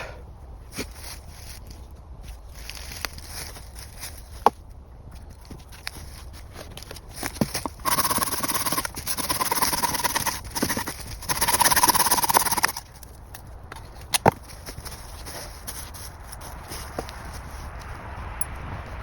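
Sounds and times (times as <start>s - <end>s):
hand tool scraping wood: 6.1s - 12.9s.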